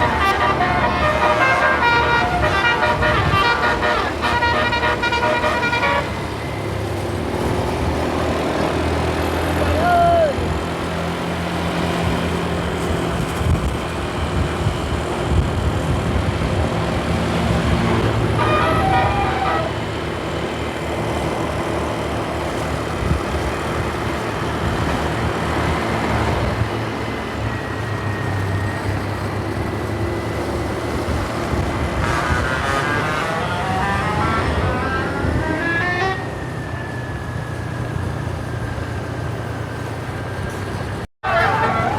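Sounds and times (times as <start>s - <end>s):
multi-tone horn: 0.0s - 6.8s, 17.4s - 20.2s, 31.4s - 36.7s, 41.2s - 41.9s
bus engine: 0.0s - 41.9s
road traffic: 0.0s - 41.9s.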